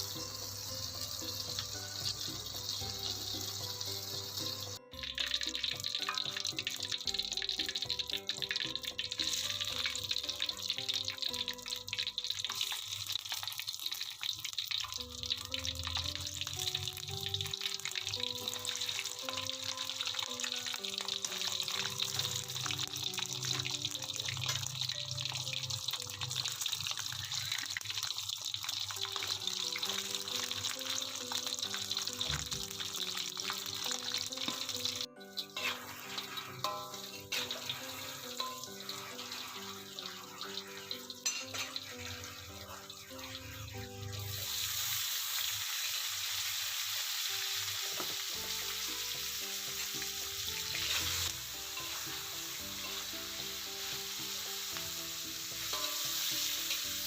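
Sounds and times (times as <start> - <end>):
background music: 0.0 - 57.0
tap water running into sink: 1.2 - 35.0.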